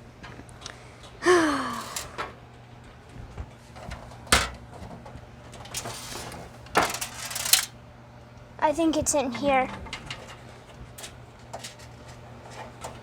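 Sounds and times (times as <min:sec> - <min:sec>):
short falling vocal sound: 0:01.2 - 0:02.2.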